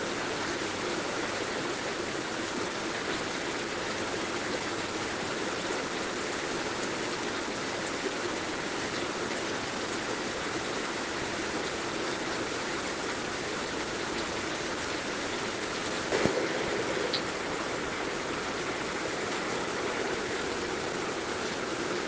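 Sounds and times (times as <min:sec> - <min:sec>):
heavy rain hissing: 0:00.0 - 0:22.0
loud drop tap: 0:16.1 - 0:17.4.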